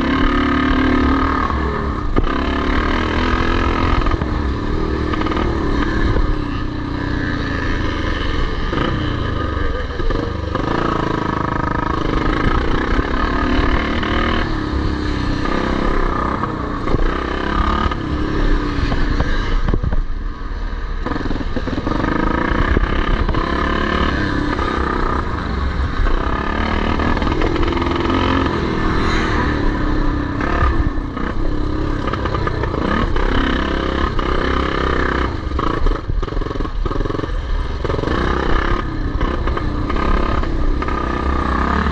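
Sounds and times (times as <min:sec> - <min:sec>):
motocross motorcycles revving: 0:00.0 - 0:41.9.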